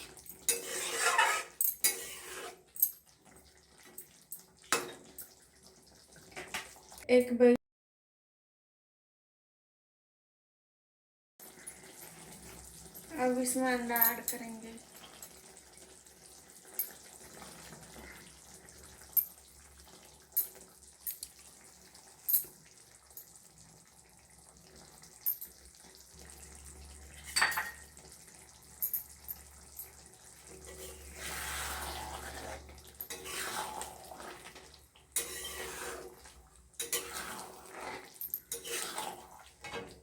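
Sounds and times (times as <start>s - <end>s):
stirring and scraping: 0.0s - 4.1s, 30.4s - 40.0s
curry bubbling: 29.4s - 40.0s.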